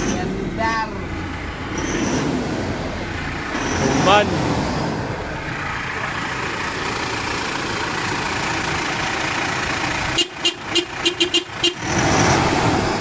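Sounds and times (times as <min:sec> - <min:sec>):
vehicle engine: 0:00.0 - 0:13.0
short vehicle horn toots: 0:10.2 - 0:11.9.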